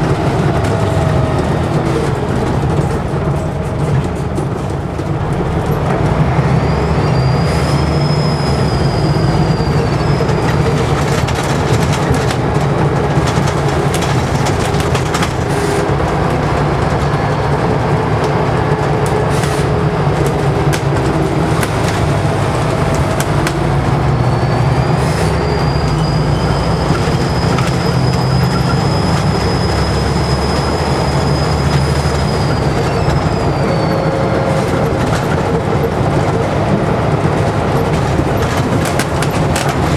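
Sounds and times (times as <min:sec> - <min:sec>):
bus diesel engine drone: 0:00.0 - 0:39.9
turbocharger whistling: 0:06.2 - 0:11.5, 0:13.9 - 0:36.5
body rattles and knocks: 0:09.3 - 0:39.9.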